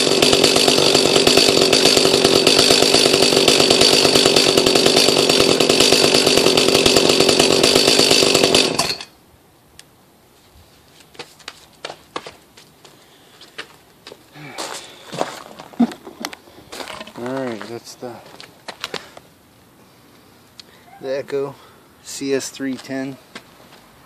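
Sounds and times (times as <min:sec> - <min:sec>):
chainsaw engine running: 0:00.0 - 0:09.1, 0:14.4 - 0:19.2.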